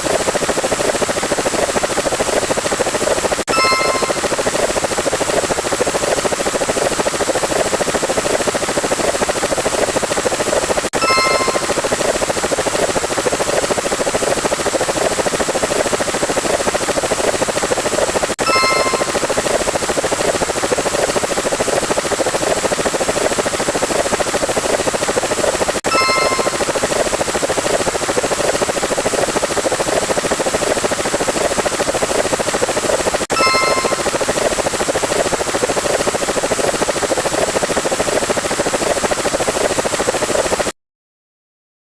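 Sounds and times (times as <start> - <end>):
rapidly fluttering rotor whir: 0.0 - 40.7
bright chime: 3.5 - 4.5, 11.0 - 12.1, 18.4 - 19.5, 25.9 - 27.0, 33.3 - 34.3.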